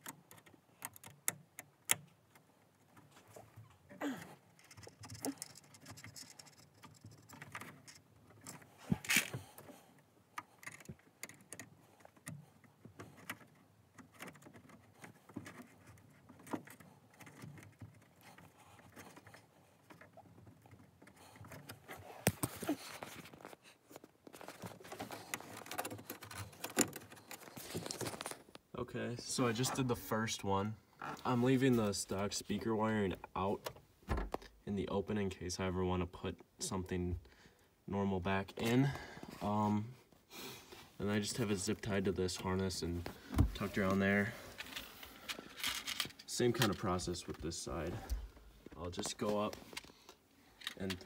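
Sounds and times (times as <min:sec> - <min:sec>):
rustling of wire handling: 0:00.0 - 0:30.1, 0:40.7 - 0:51.0.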